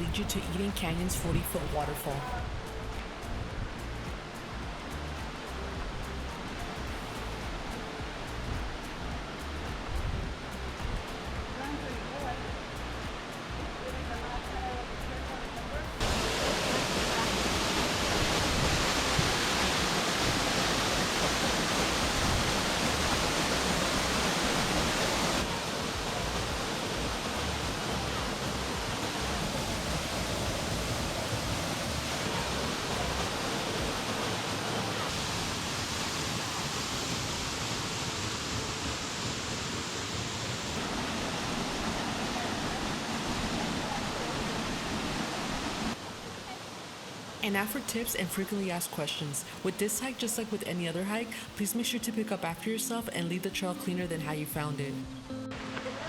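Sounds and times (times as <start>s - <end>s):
waterfall pouring into pool: 4.2s - 47.4s.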